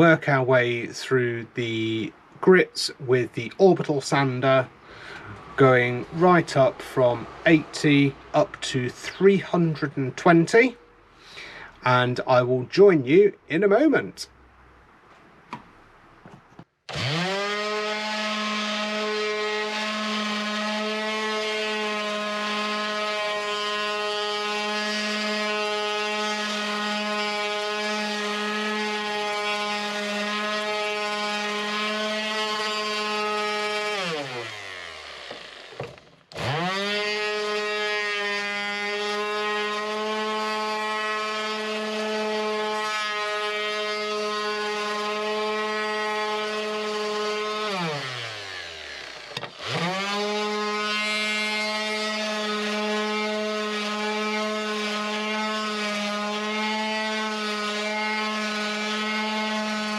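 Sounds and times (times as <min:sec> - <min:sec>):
orbital sander humming: 0:16.9 - 0:59.9.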